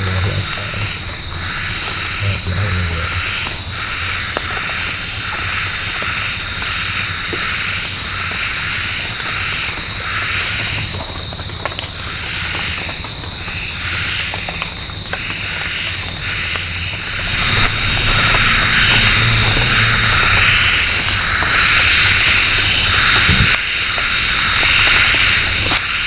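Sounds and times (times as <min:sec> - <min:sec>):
high-pitched drone: 0:00.0 - 0:04.0, 0:17.0 - 0:21.8
pulsing animal call: 0:00.0 - 0:05.0, 0:16.2 - 0:23.6.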